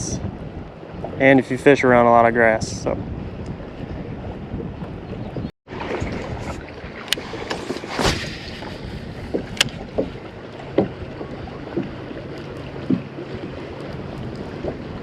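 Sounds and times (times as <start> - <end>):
wind rushing over microphone: 0.0 - 12.0, 13.3 - 15.0
knocks and splashes: 5.6 - 15.0.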